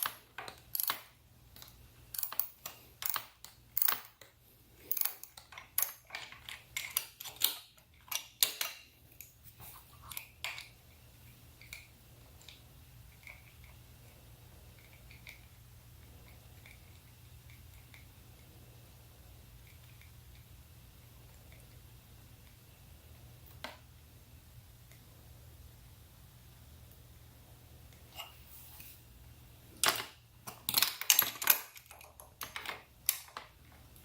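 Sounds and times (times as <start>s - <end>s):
hand tools clicking and knocking: 0.0s - 9.3s.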